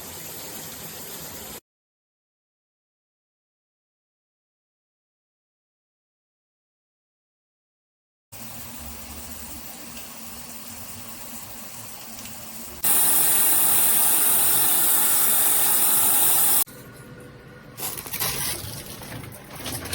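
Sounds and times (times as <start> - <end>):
shower head spraying water: 8.4 - 16.7.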